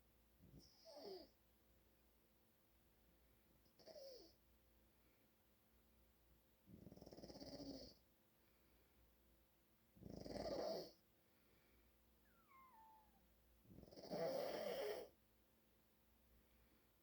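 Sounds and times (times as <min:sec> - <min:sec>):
faint falling whistle: 0:12.3 - 0:13.2.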